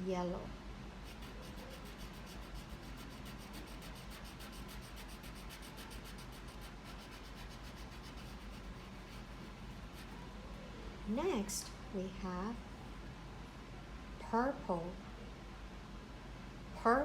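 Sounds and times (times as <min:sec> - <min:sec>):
crayon scribbling on paper: 0:01.0 - 0:10.3.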